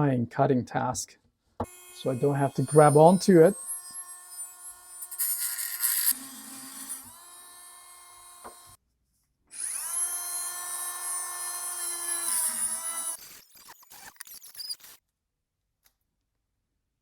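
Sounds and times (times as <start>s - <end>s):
rotary cutting tool whining: 1.6s - 8.8s, 9.5s - 15.0s.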